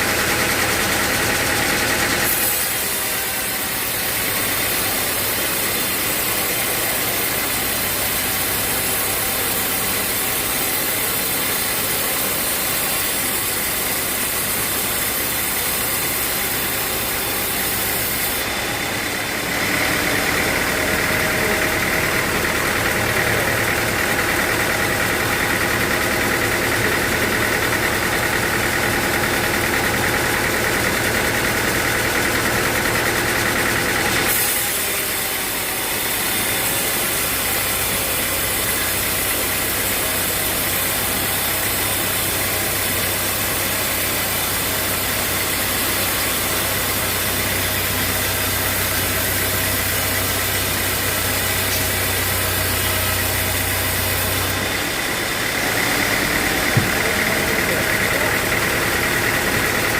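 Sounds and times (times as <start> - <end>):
engine-driven saw running: 0.0 - 59.9.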